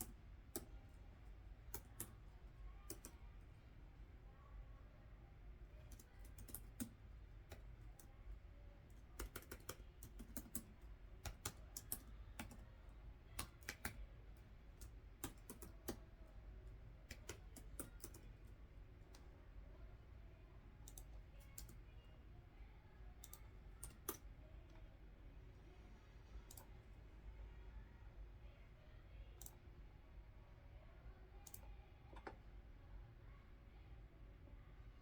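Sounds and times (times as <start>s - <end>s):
computer keyboard key clicks: 2.9s - 3.2s, 9.2s - 12.6s, 13.3s - 14.0s, 14.8s - 16.0s, 17.1s - 18.3s.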